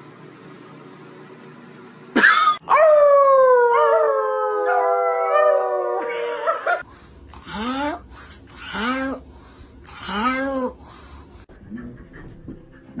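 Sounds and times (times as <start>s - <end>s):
dog howling: 2.6s - 6.8s.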